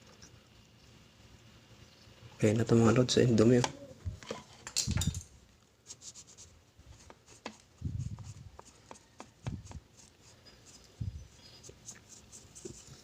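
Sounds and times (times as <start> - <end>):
scraping and rubbing by hand: 5.8 - 13.0.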